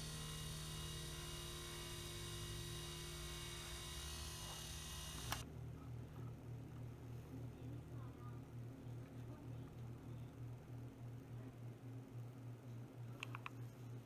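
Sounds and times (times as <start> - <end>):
electrical hum with whining tones: 0.0 - 14.0.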